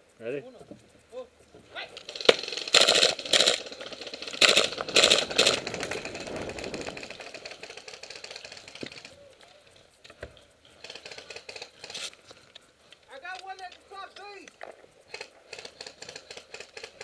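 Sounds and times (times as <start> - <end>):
airsoft gun firing rapid bursts: 1.8 - 9.2, 10.8 - 12.1, 15.0 - 17.0.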